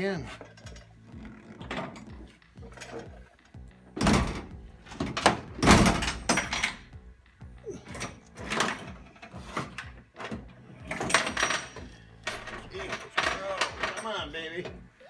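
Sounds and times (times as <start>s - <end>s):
music: 0.0s - 15.0s
metallic clunks of door latch: 4.0s - 7.0s, 9.6s - 14.1s.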